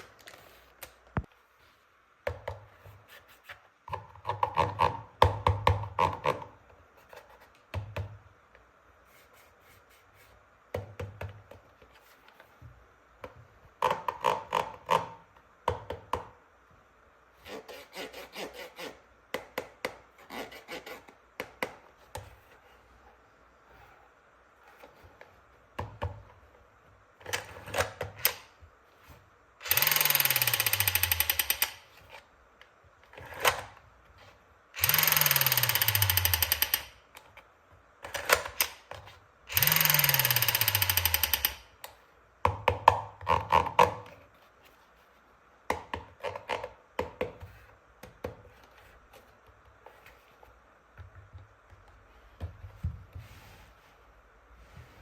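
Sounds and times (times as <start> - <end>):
plastic toy clicks and knocks: 29.6 - 31.8, 34.8 - 37.0, 39.5 - 44.0
toy rifle firing sound effect: 39.5 - 41.6.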